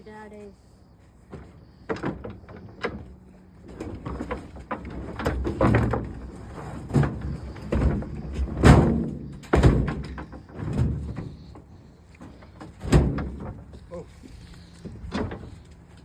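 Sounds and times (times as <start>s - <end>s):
knocks and thuds of objects: 3.7s - 11.6s, 12.3s - 13.8s, 14.8s - 15.5s.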